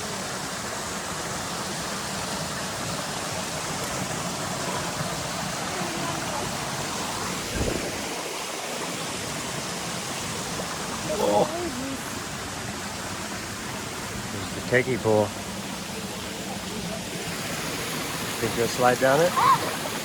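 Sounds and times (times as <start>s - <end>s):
waterfall rushing: 0.0s - 20.0s.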